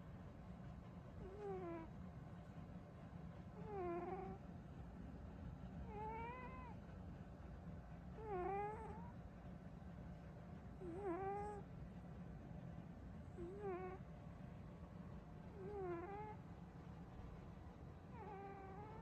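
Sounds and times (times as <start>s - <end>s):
low steady hum: 0.0s - 19.0s
cat snoring squeakily: 1.2s - 1.9s, 3.6s - 4.4s, 5.9s - 6.7s, 8.2s - 9.1s, 10.8s - 11.6s, 13.4s - 14.0s, 15.5s - 16.4s, 18.1s - 19.0s.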